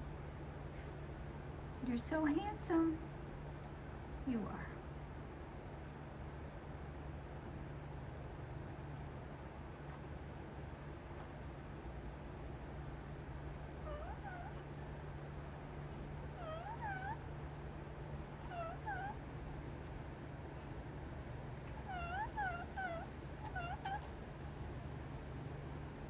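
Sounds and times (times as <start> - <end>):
parrot chirping: 16.4 - 17.2.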